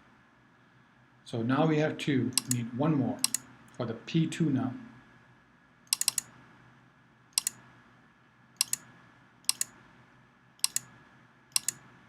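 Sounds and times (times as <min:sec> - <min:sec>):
sharp computer mouse clicks: 0:02.4 - 0:02.6, 0:03.2 - 0:03.5, 0:05.9 - 0:06.3, 0:07.4 - 0:07.6, 0:08.6 - 0:08.9, 0:09.5 - 0:09.8, 0:10.6 - 0:10.9, 0:11.5 - 0:11.8.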